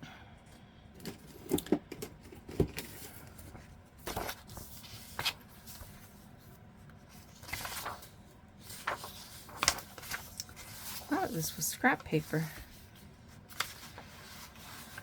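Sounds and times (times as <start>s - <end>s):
paper being handled: 2.9s - 15.0s
paper rustling swishes: 3.5s - 15.0s.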